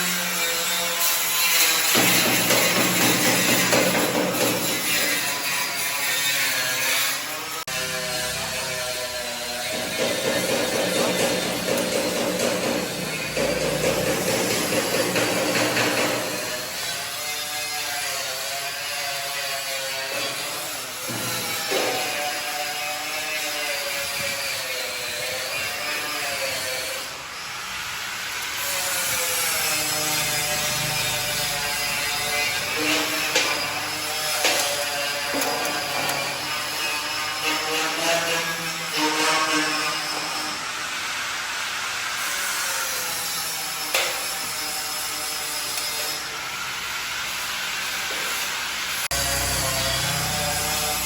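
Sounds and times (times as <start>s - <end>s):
metalworking machinery hissing: 7.8s - 17.2s, 19.2s - 39.1s, 39.7s - 51.0s.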